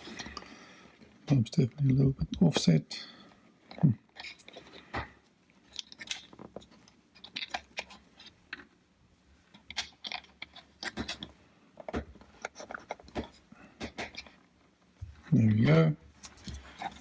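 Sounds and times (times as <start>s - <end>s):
small plastic parts clicking and rattling: 3.6s - 17.0s.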